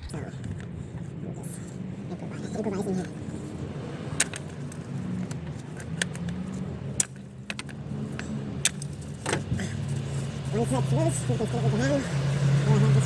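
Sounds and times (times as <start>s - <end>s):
steady low hum: 0.0s - 0.8s.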